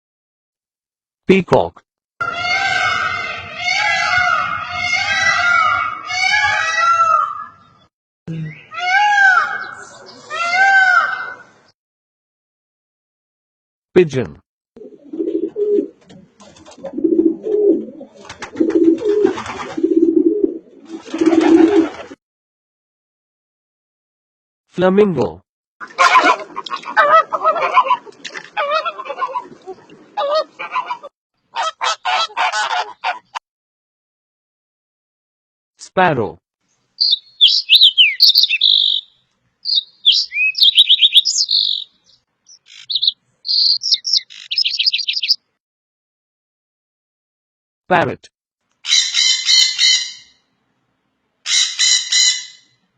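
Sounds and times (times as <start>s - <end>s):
pigeon cooing: 14.8s - 16.0s, 16.6s - 22.1s
sparrow chirping: 37.0s - 45.4s.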